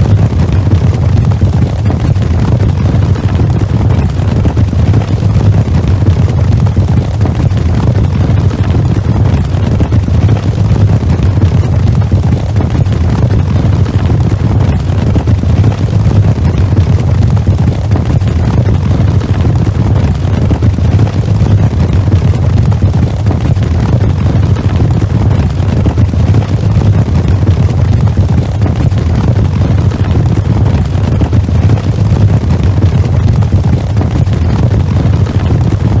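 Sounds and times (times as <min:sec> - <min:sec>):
horses galloping: 0:17.7 - 0:19.7.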